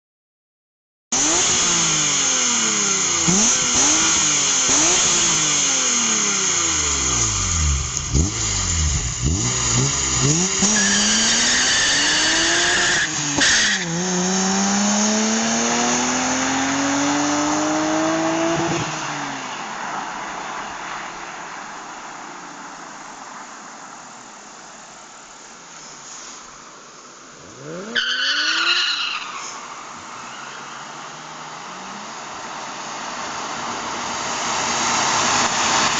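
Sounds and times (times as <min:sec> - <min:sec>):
car engine revving: 0:01.2 - 0:19.8, 0:27.5 - 0:29.2, 0:29.9 - 0:35.9.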